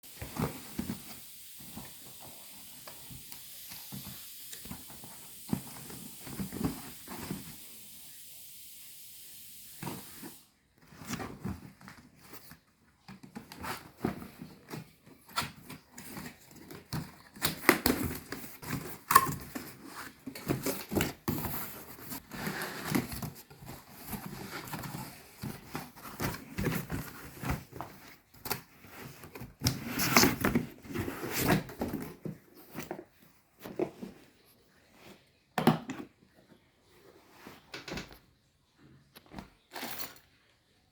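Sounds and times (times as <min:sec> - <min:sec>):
steady hiss: 0:00.0 - 0:10.6
objects being handled: 0:09.8 - 0:38.3.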